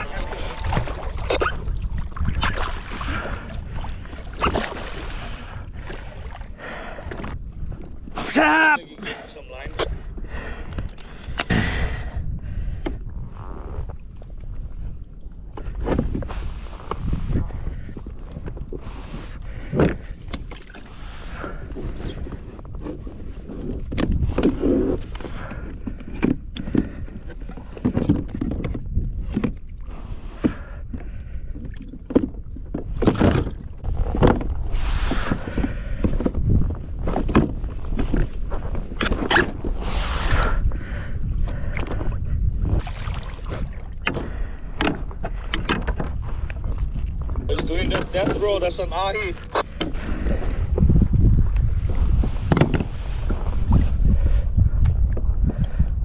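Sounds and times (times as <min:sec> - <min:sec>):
water slapping against kayak hull: 0:00.0 - 0:08.4, 0:41.4 - 0:48.6
water sloshing against kayak hull: 0:00.0 - 0:11.4, 0:12.4 - 0:55.8
steady low rumble: 0:08.8 - 0:20.2.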